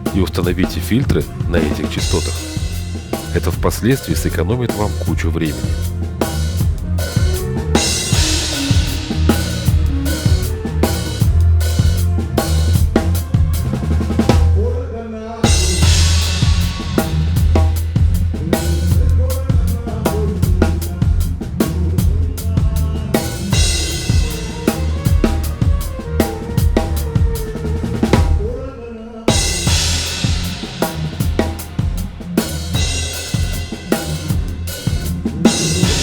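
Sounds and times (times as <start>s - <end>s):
drum kit playing a groove: 0.0s - 14.7s, 15.4s - 28.6s, 29.3s - 36.0s
bright cymbal washes: 1.9s - 11.2s, 15.5s - 18.9s, 29.4s - 36.0s.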